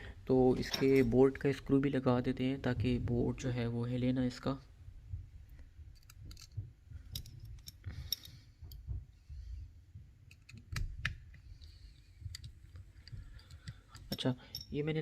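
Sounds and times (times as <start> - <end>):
metal tools clicking on phone: 10.3 - 14.8.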